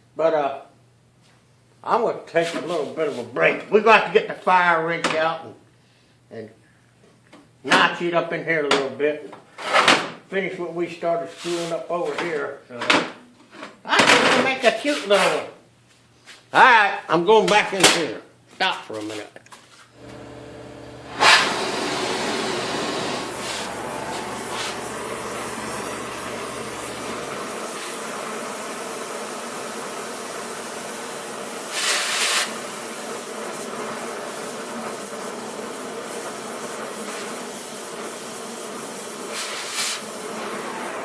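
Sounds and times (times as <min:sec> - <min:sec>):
cutting torch pop: 0:20.0 - 0:27.6
cutting torch flame hissing: 0:20.0 - 0:41.0.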